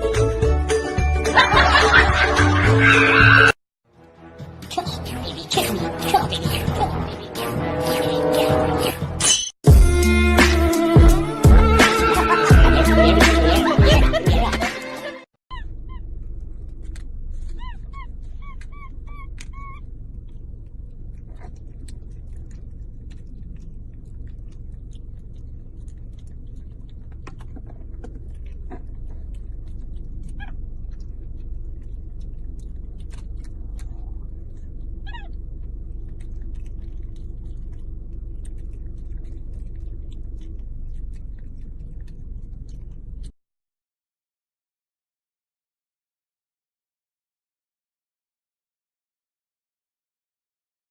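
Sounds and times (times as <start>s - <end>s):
small animal high calls: 15.5s - 16.1s, 17.5s - 19.8s, 35.0s - 35.4s
steady low hum: 15.5s - 43.3s.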